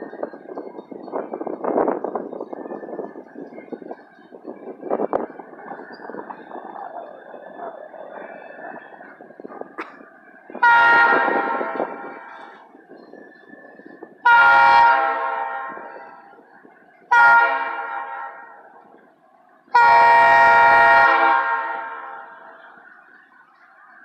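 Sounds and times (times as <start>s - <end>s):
locomotive air horn blasts: 10.5s - 12.6s, 14.2s - 16.3s, 17.1s - 18.6s, 19.7s - 22.7s.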